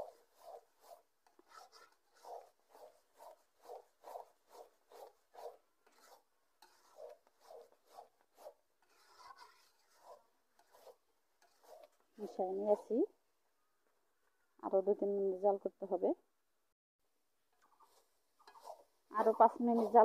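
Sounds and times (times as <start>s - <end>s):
spatula scraping and stirring pickle: 0.0s - 13.1s, 17.5s - 20.0s.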